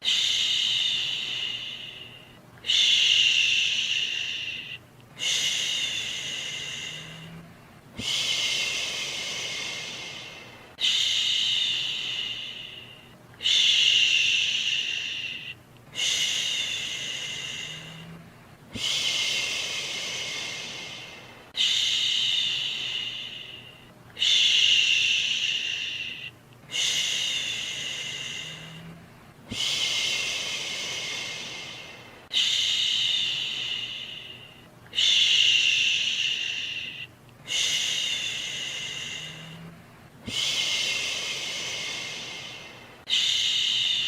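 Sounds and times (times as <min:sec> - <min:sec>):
person shushing: 0:00.0 - 0:44.0.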